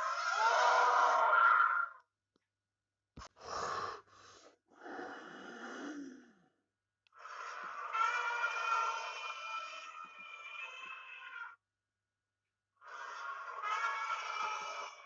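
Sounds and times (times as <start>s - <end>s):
sustained animal call: 0.0s - 2.0s, 7.3s - 11.6s, 12.9s - 15.0s
wheezing breath: 3.3s - 6.5s.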